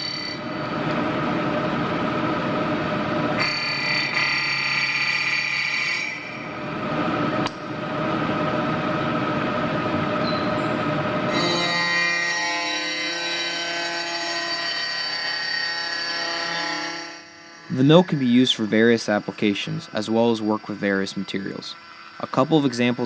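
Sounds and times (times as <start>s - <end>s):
milling machine cutting metal: 3.4s - 6.4s, 11.3s - 23.0s.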